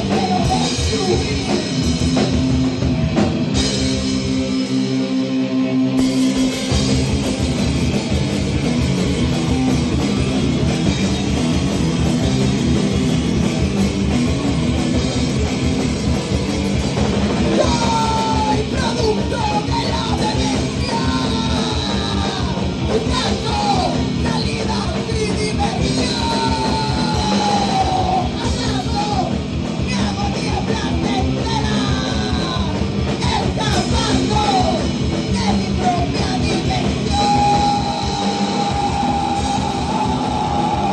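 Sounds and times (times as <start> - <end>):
live punk band playing: 0.0 - 40.9
shouted vocals: 17.5 - 40.9.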